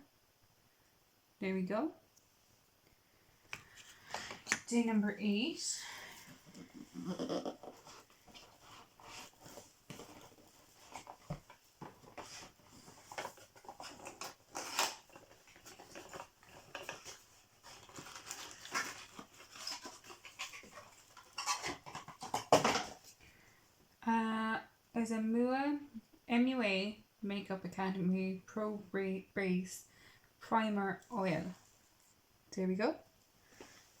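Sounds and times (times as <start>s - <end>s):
wrapper crinkling and rustling: 7.7s - 23.0s.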